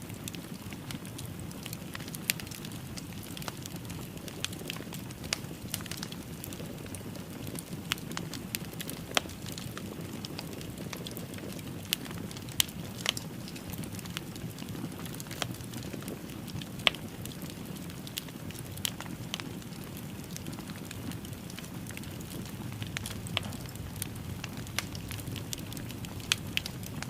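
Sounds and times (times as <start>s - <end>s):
wood fire crackling: 0.0s - 27.0s
sharp pops and snaps: 20.2s - 27.0s.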